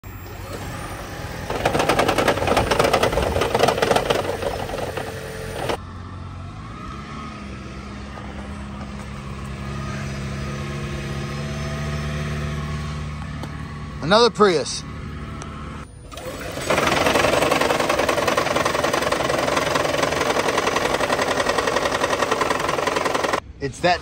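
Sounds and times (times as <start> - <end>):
car petrol engine running: 0.2 - 5.8, 16.1 - 23.4
rapid loud clattering: 1.4 - 5.8, 16.6 - 23.4.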